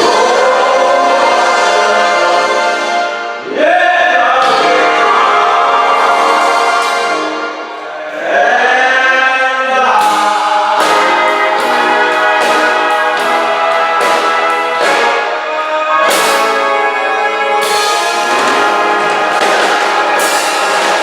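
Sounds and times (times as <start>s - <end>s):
swing big band playing: 0.0s - 8.1s, 9.6s - 21.0s.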